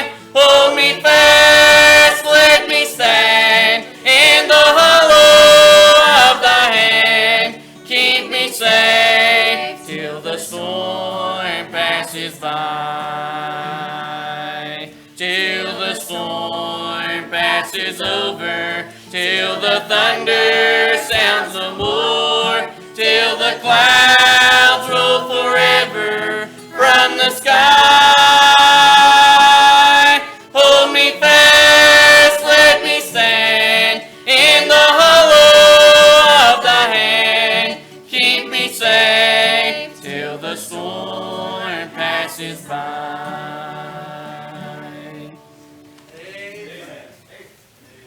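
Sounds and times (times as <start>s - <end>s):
group singing gospel in harmony: 0.0s - 45.4s.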